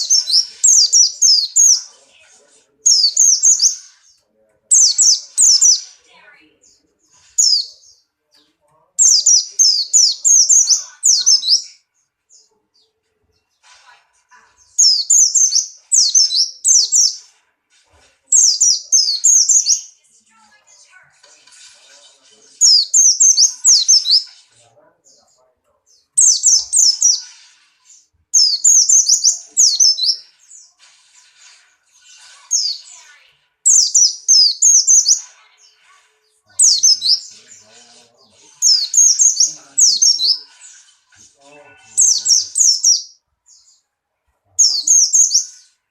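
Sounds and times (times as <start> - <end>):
bird chirping song: 0.0 - 13.6, 14.4 - 17.4, 18.0 - 20.3, 22.0 - 30.8, 32.0 - 45.9.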